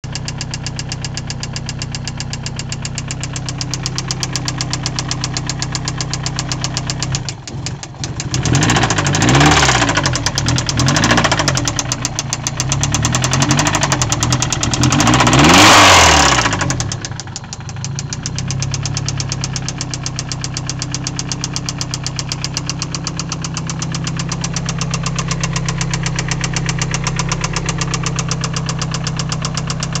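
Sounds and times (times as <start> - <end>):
engine revving: 7.6 - 17.2
car engine idling with knock: 9.8 - 15.4, 16.4 - 30.0.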